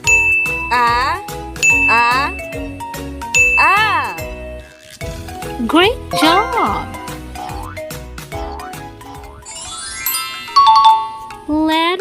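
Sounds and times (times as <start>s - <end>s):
twinkling bell-like notes: 0.0s - 1.0s, 1.6s - 4.6s, 9.4s - 11.5s.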